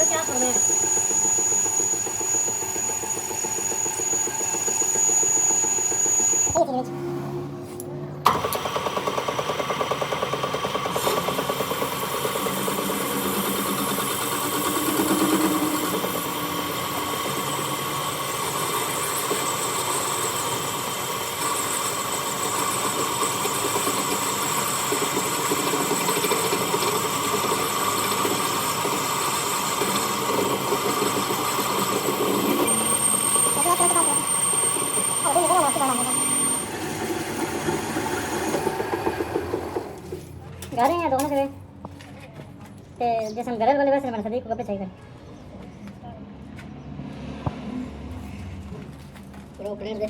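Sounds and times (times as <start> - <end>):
workshop machine chattering: 0.0 - 6.7, 8.4 - 41.4.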